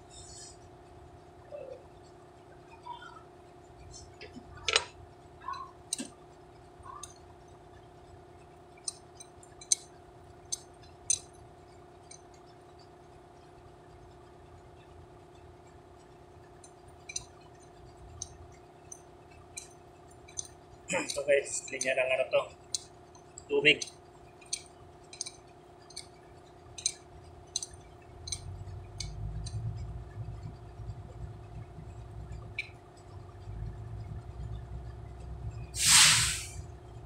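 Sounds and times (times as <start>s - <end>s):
steady low hum: 0.0s - 37.0s
metallic clicks of hand tools: 5.9s - 6.1s, 8.8s - 11.4s, 16.6s - 17.4s, 18.1s - 22.0s, 22.7s - 29.8s.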